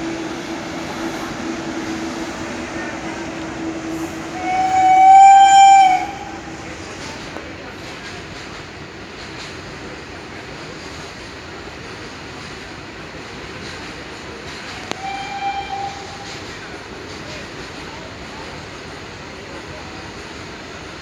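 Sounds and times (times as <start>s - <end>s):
locomotive horn honk: 0.0s - 7.4s, 14.8s - 16.5s
train rolling past rumble: 0.0s - 21.0s.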